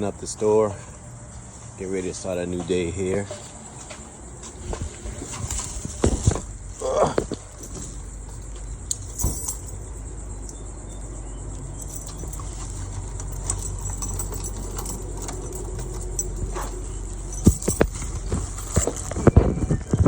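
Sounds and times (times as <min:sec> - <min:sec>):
low hum: 0:05.0 - 0:20.0
keys jangling: 0:07.4 - 0:19.3.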